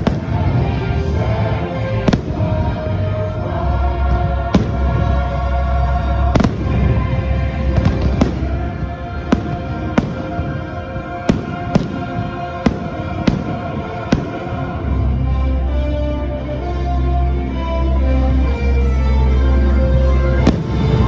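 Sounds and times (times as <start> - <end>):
show music: 0.0 - 21.0
aerial fireworks bangs: 4.5 - 5.0, 6.4 - 6.9, 11.3 - 14.6.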